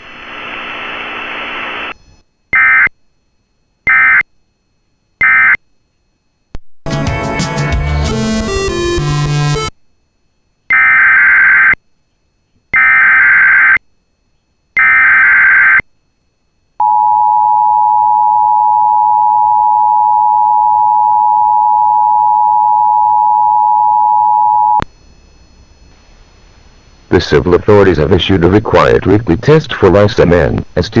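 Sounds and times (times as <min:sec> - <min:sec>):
music: 0:06.8 - 0:09.7.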